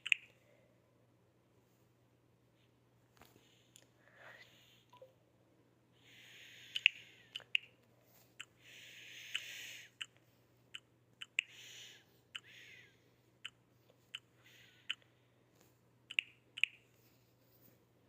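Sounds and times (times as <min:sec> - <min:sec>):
person breathing with hissing: 0:06.0 - 0:07.3, 0:08.6 - 0:10.0, 0:11.5 - 0:13.1
sharp clicks: 0:06.7 - 0:07.7, 0:10.8 - 0:11.5.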